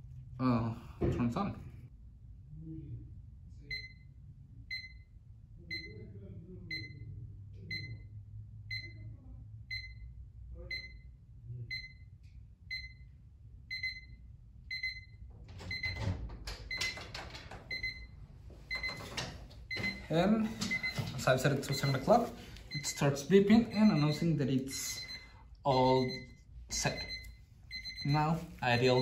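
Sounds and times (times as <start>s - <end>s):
alarm clock beeping: 4.7s - 5.0s, 5.7s - 6.0s, 6.7s - 7.0s, 7.7s - 8.1s, 8.7s - 9.0s, 9.7s - 10.0s, 10.7s - 11.1s, 11.7s - 12.0s, 12.7s - 13.1s, 13.7s - 16.0s, 17.7s - 19.1s, 19.7s - 29.0s.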